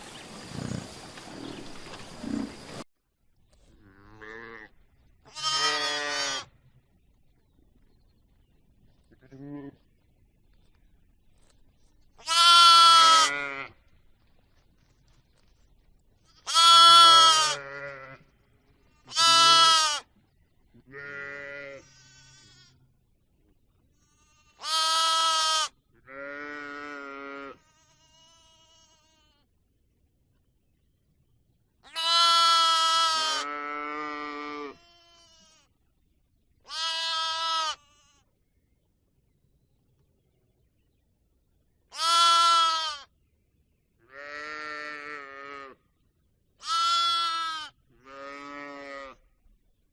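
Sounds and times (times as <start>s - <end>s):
farm animal bleating: 1.4s - 2.8s, 3.8s - 6.5s, 12.2s - 13.8s, 16.3s - 20.1s, 20.8s - 22.8s, 24.0s - 29.5s, 31.8s - 35.7s, 36.7s - 38.3s, 41.9s - 43.2s, 44.1s - 45.8s, 46.6s - 49.3s.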